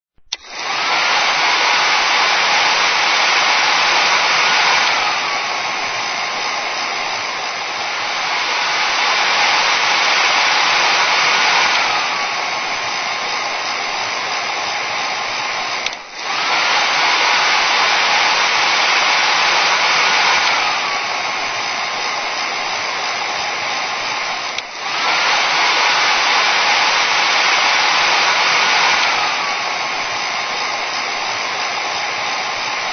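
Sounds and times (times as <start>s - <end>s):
hair dryer running: 0.2s - 32.9s.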